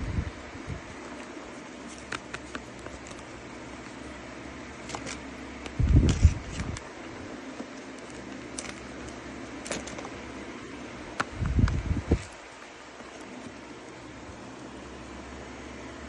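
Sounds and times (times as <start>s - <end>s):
steady hum: 0.0s - 16.0s
packaging crinkling and clicking: 1.0s - 4.0s, 4.8s - 6.9s, 7.5s - 10.2s
low rumbling handling noise: 11.0s - 14.4s.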